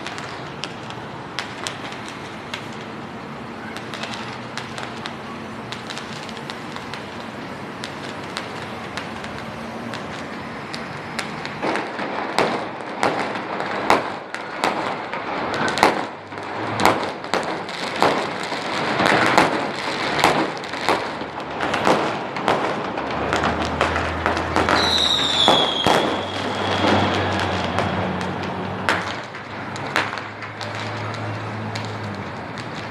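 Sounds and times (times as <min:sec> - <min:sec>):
firework crackle: 0:00.0 - 0:32.9
fireworks exploding: 0:00.0 - 0:32.9
high firework whistle: 0:24.6 - 0:28.0.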